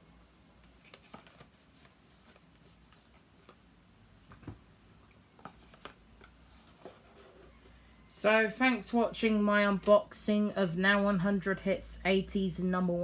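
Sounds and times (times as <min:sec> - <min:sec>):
cd cases and cardboard clicking: 0:00.6 - 0:03.6, 0:05.3 - 0:07.0.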